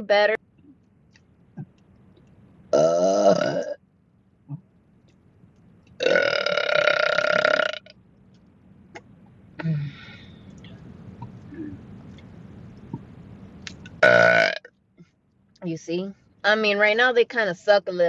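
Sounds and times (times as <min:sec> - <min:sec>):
woman burping: 0:02.7 - 0:03.8, 0:06.0 - 0:07.9, 0:14.0 - 0:14.7.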